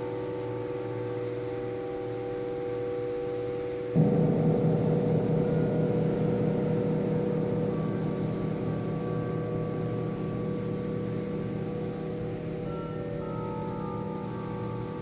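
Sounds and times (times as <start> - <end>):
temple chimes ringing: 4.0 - 15.0.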